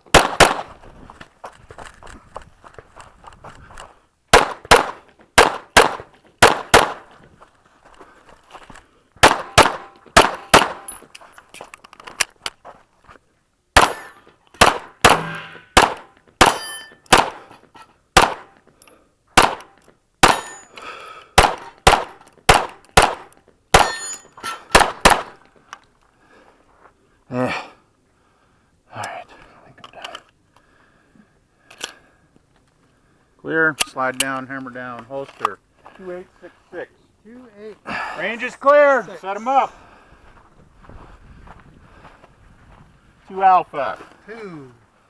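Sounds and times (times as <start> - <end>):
rapid pistol fire: 0.1 - 0.7, 4.3 - 7.0, 9.2 - 10.8, 14.6 - 17.4, 18.2 - 18.5, 19.4 - 20.5, 21.4 - 23.9, 24.8 - 25.4
steel targets ringing: 13.8 - 14.2, 15.1 - 15.8, 16.4 - 17.1, 20.2 - 20.8, 23.8 - 24.7.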